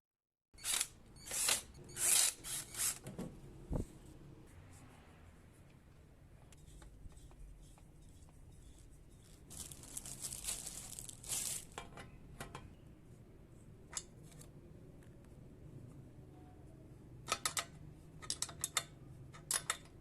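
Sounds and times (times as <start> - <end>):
crinkling and tearing: 9.4 - 11.8.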